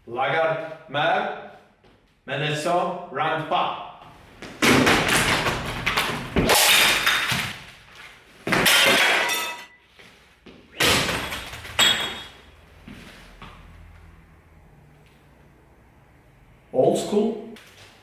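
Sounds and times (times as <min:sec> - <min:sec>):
loud crashing breaking impacts: 0:04.6 - 0:07.6.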